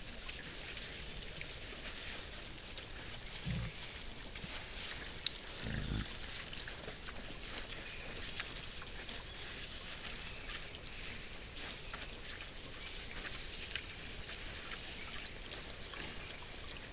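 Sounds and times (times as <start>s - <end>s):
wild boars grunting: 3.0s - 4.0s, 5.4s - 6.2s.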